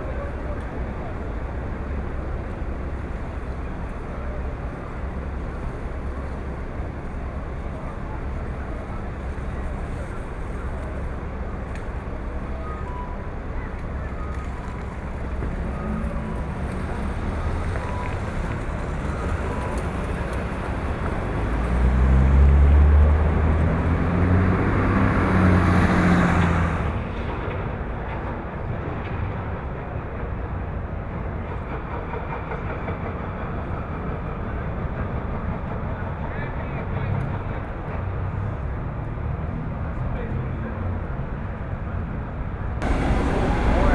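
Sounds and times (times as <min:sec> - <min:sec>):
city vehicle rumble: 0:00.0 - 0:43.9
vehicle passing: 0:21.4 - 0:27.2, 0:42.8 - 0:43.9.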